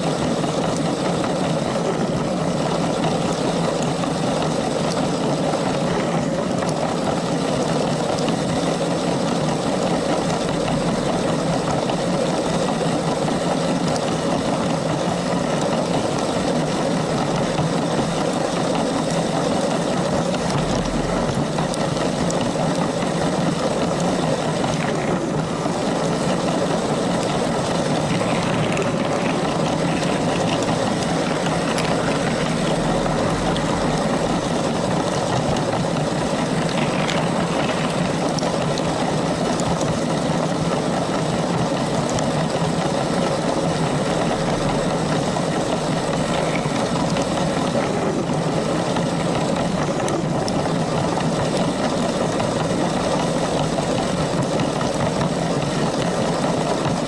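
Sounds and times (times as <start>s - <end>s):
wheels rumbling on rails: 0.0s - 57.0s
toy train motor whirring: 27.4s - 38.9s.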